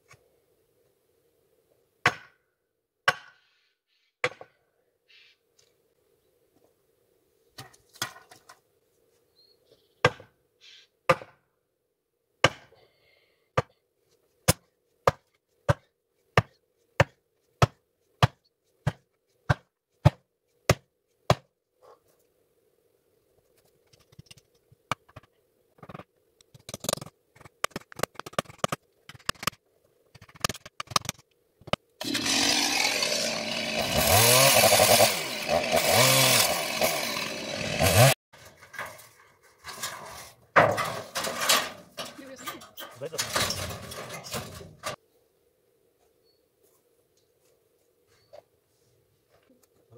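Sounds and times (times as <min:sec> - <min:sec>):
chainsaw running: 0:32.0 - 0:38.2.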